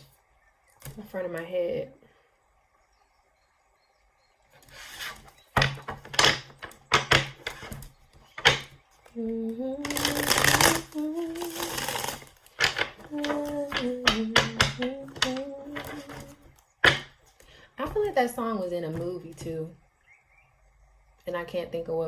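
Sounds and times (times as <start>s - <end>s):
cards shuffling: 4.6s - 9.2s, 9.8s - 17.4s
woman humming: 9.2s - 12.2s, 13.1s - 16.4s.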